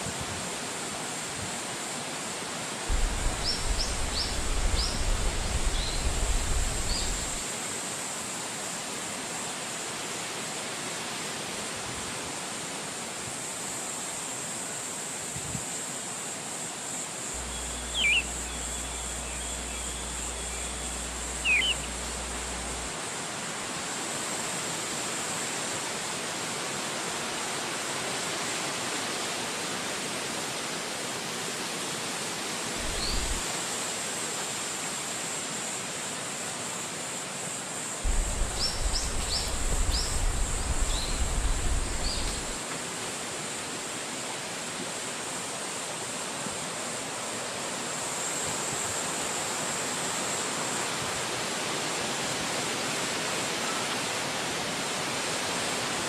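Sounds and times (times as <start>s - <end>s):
wind through trees: 0.0s - 56.0s
bird chirps: 2.9s - 7.4s, 17.4s - 22.9s
downward-sweeping bird calls: 17.4s - 22.9s.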